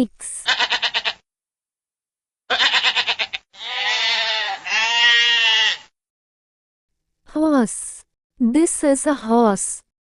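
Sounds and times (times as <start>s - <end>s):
sheep bleating: 0.4s - 1.2s, 2.5s - 5.9s.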